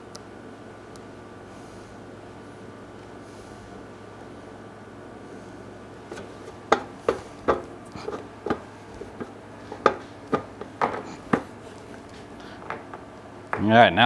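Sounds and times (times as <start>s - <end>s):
hard objects knocking: 6.1s - 11.6s, 12.5s - 13.8s.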